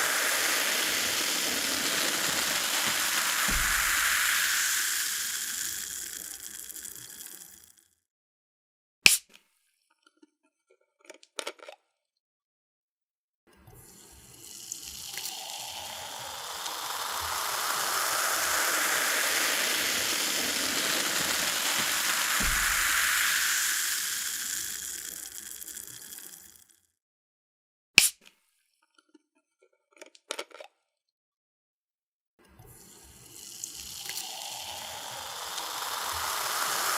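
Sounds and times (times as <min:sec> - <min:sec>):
cola pouring and fizzing: 0:00.0 - 0:07.8, 0:13.7 - 0:26.7, 0:32.7 - 0:36.9.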